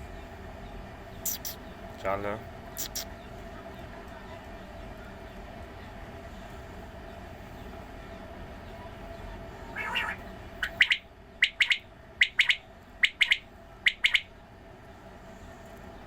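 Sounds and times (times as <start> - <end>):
quail calling: 2.8 - 3.1, 9.7 - 14.3.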